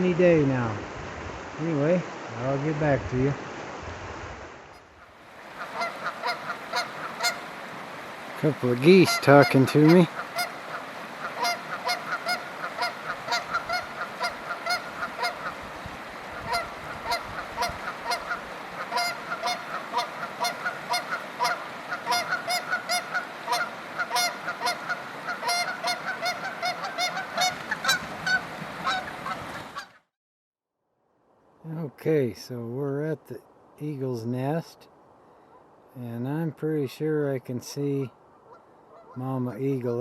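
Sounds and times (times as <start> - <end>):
geese honking: 5.4 - 30.0, 38.5 - 39.2.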